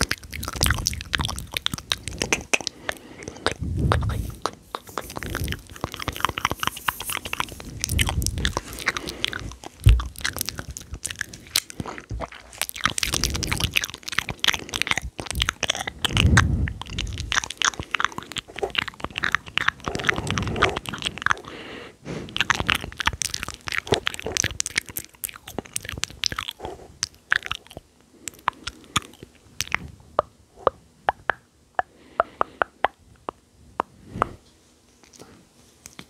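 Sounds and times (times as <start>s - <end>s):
wet tongue and lip clicks: 0.0s - 21.6s, 22.3s - 34.4s, 35.0s - 36.0s
low breath puffs: 20.1s - 22.5s.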